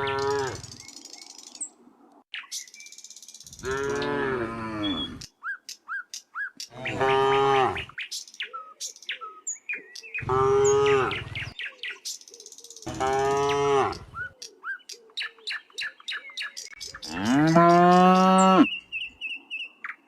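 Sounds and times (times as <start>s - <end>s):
cows mooing: 0.0s - 0.7s, 3.6s - 5.2s, 6.8s - 7.8s, 10.2s - 11.5s, 12.9s - 14.2s, 17.1s - 18.7s.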